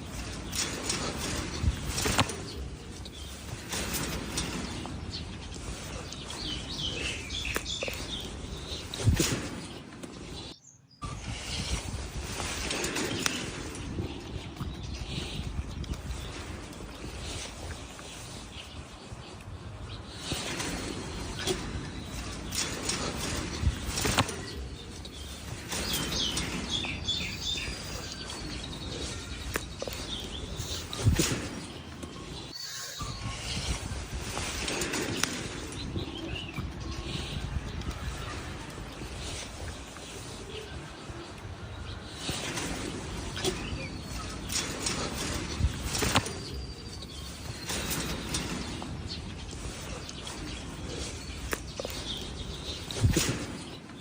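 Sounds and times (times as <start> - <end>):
outdoor background noise: 0.0 - 54.0
steady background noise: 0.0 - 54.0
high bird chirps: 25.0 - 38.4
short high chirps: 32.2 - 33.5.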